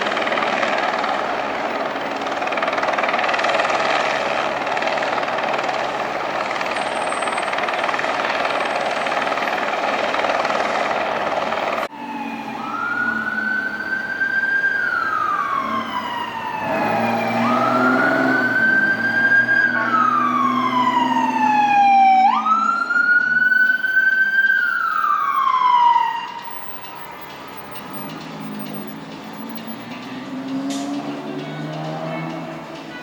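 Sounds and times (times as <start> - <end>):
emergency siren wailing: 0.0 - 33.0
vehicle engine humming: 0.0 - 33.0.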